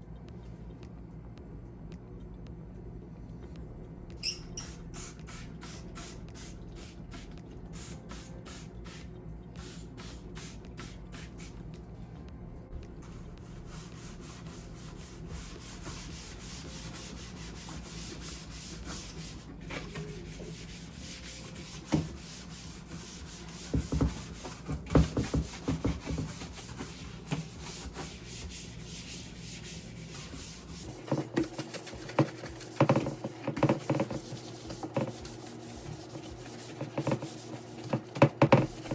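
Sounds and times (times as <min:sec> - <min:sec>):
steady low hum: 0:00.0 - 0:24.8
scrubbing strokes: 0:26.2 - 0:38.9.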